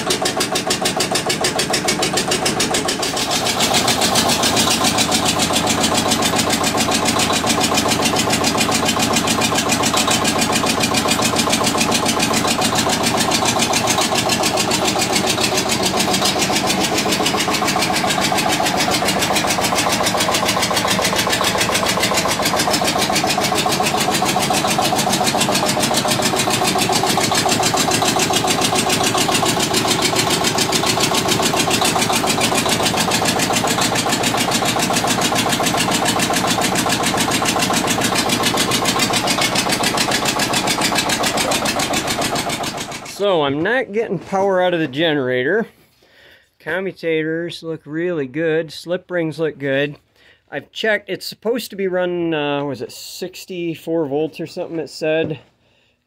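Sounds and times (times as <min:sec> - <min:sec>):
diesel generator engine clattering: 0:00.0 - 0:43.8.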